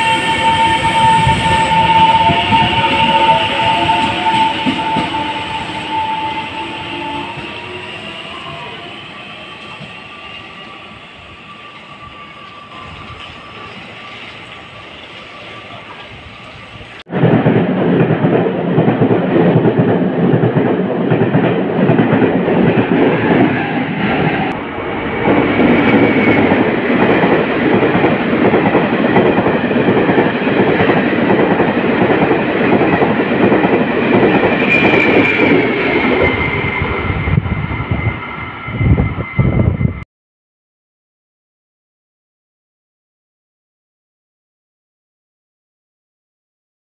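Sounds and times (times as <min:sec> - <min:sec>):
high wheel squeals: 0:00.0 - 0:17.0, 0:34.3 - 0:40.0.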